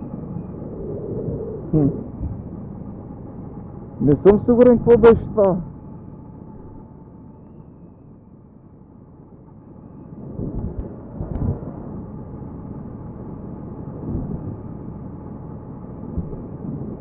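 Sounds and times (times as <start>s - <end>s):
wind rumbling over microphone: 0.0s - 5.4s, 10.2s - 17.0s.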